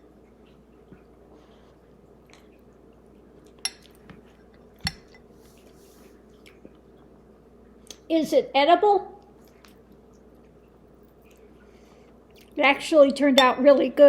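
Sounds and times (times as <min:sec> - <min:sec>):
cutlery clinking against dish: 0:03.6 - 0:05.3.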